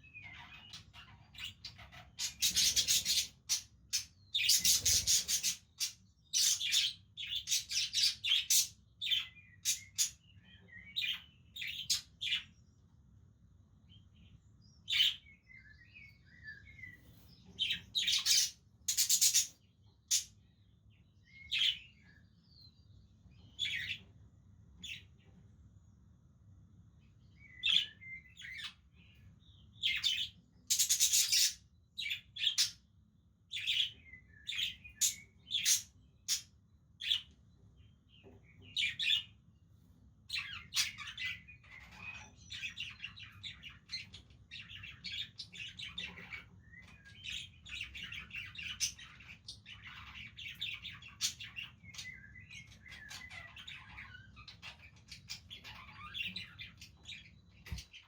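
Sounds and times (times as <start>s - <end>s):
budgerigars chirping: 0.2s - 12.5s, 16.8s - 20.3s, 23.6s - 24.1s, 29.8s - 32.8s, 33.6s - 37.3s, 40.3s - 58.0s.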